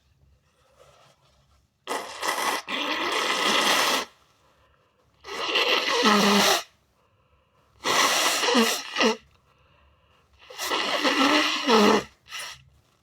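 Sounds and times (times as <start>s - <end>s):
air blown through nose: 1.9s - 4.2s, 5.2s - 6.7s, 7.8s - 9.2s, 10.4s - 12.6s.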